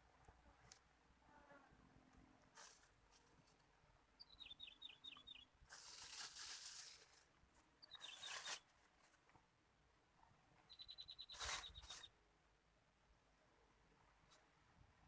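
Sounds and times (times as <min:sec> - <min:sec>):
rustling hiss: 0:02.5 - 0:03.7, 0:05.6 - 0:07.3
small bird chirping: 0:04.2 - 0:06.8, 0:07.8 - 0:08.7, 0:10.6 - 0:12.1.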